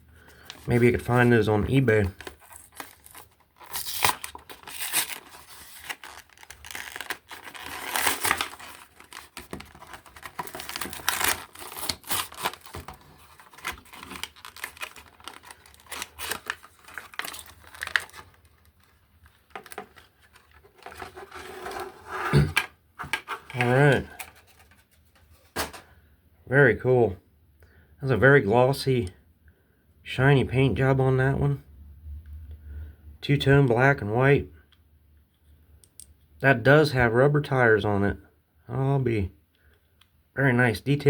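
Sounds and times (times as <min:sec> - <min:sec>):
blister package tearing and crinkling: 0:02.0 - 0:21.8.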